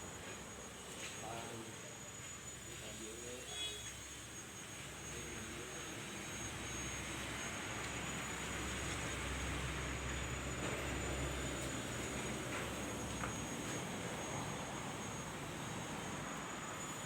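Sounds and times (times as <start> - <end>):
steady machine noise: 0.0 - 17.0.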